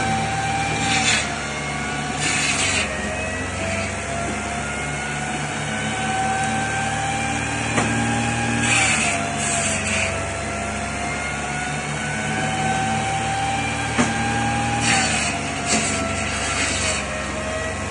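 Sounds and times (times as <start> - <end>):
drum saw running: 0.0 - 17.9
saw hissing through wood: 0.5 - 3.9, 8.5 - 10.2, 14.7 - 17.2.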